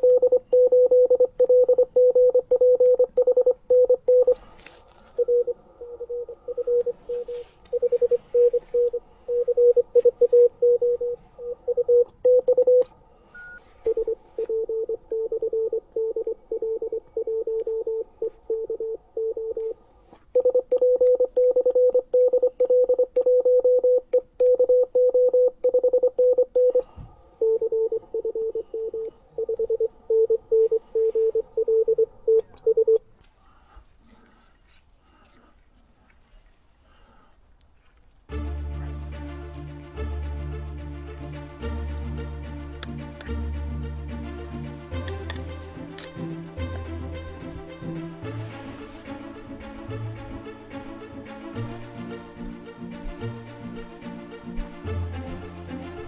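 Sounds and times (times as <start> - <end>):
morse code tones: 0.0 - 4.4, 5.2 - 19.8, 20.4 - 33.0.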